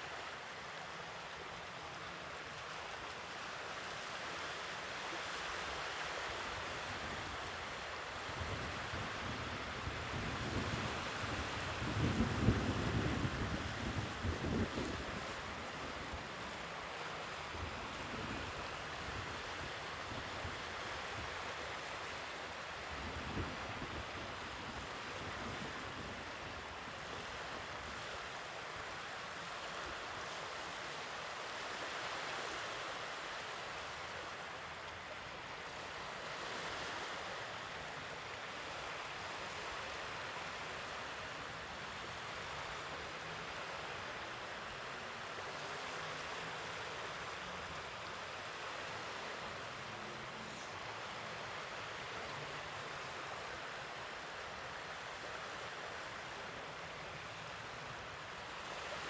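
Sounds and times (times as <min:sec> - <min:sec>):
sea waves washing ashore: 0:00.0 - 0:59.0
wind buffeting microphone: 0:08.3 - 0:16.3.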